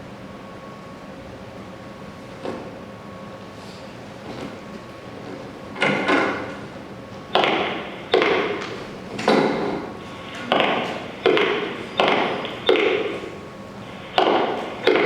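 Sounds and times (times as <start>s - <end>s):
sharp echoing knocks: 7.3s - 13.4s, 14.1s - 15.0s.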